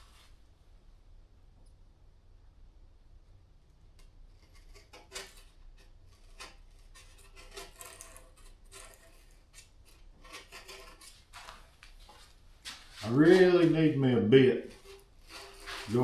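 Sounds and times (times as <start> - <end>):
knife scraping and carving: 4.0 - 12.2, 14.6 - 16.0.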